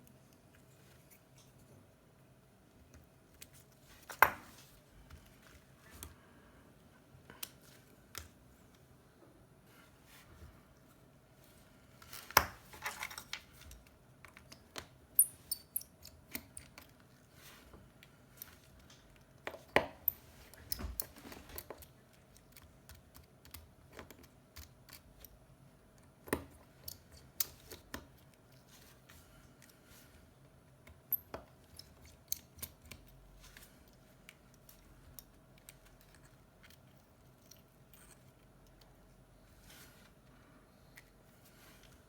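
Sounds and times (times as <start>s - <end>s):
small tools clicking and tapping: 12.3s - 17.0s, 30.7s - 33.2s.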